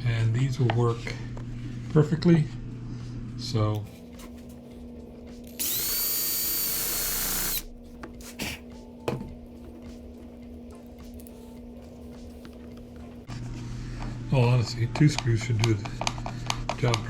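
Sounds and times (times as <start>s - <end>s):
drill-driver whining: 5.5s - 7.7s.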